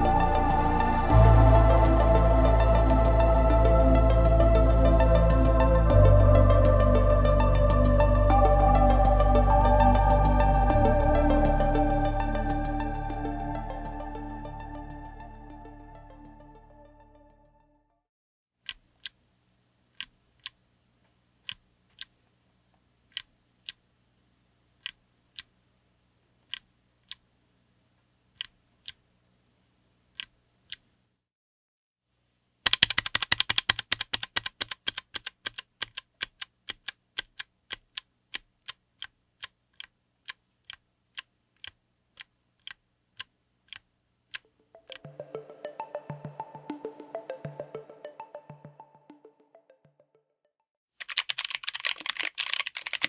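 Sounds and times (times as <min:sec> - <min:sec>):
fast typing on clicky keyboard: 0:32.7 - 0:38.8, 0:51.0 - 0:53.0
clicky keyboard keystrokes: 0:32.7 - 0:45.0, 0:51.0 - 0:53.0.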